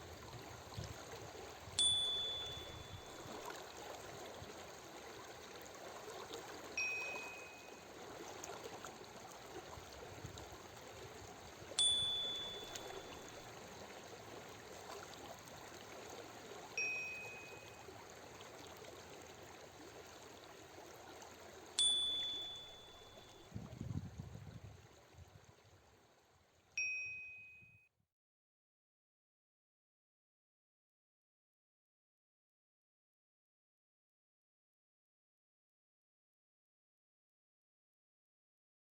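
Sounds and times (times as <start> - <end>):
flowing water: 0.0 - 27.5
short chime tones: 1.8 - 3.3, 6.8 - 7.8, 11.8 - 13.4, 16.8 - 17.8, 21.8 - 23.5, 26.8 - 27.9.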